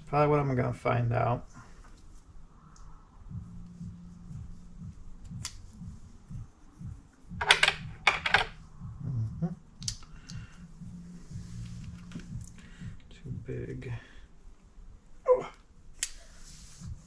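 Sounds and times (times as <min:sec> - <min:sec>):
low steady hum: 0:00.0 - 0:17.0
tools clicking and clattering: 0:07.4 - 0:08.6.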